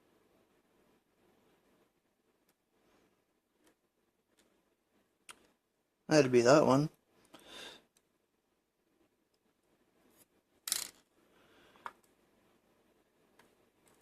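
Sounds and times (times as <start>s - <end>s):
tiny metal pins clattering: 10.6s - 11.0s.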